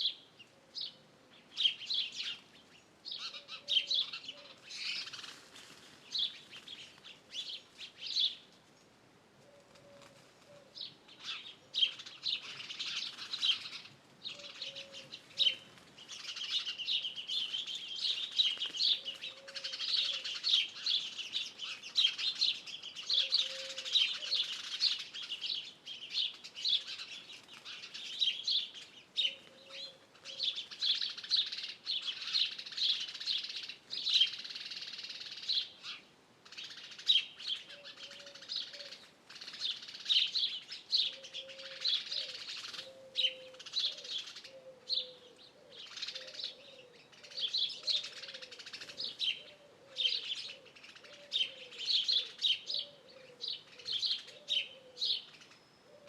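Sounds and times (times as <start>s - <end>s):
songbirds chirping and trilling: 0.0s - 56.0s.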